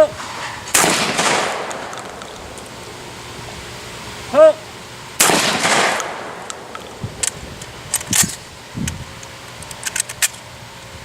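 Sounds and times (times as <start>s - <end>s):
shotgun metallic clicks: 0.7s - 2.8s, 5.2s - 10.4s.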